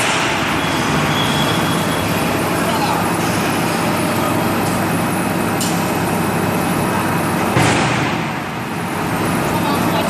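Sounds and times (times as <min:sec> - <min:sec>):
sudden loud bang: 0:07.5 - 0:08.5.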